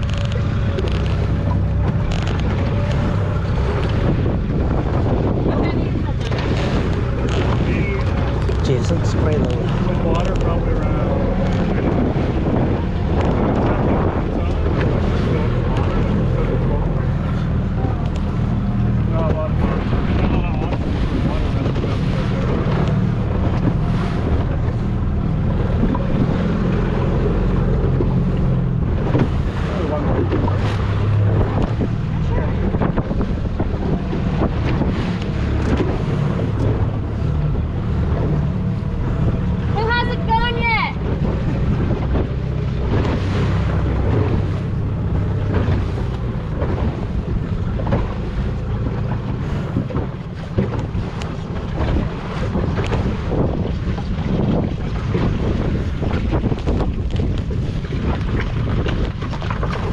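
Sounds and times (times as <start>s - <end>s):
engine running low drone: 0.0s - 59.9s
water noise: 0.0s - 59.9s
wind rushing over microphone: 0.0s - 59.9s.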